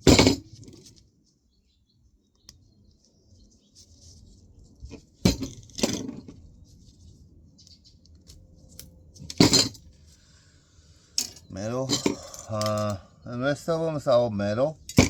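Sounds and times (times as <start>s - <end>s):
small metal parts clinking: 9.2s - 9.9s, 11.2s - 13.0s.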